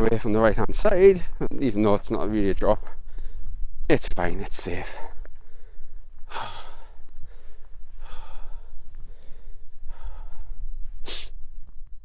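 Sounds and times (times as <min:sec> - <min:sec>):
person breathing heavily: 0:03.0 - 0:03.6, 0:05.3 - 0:11.4.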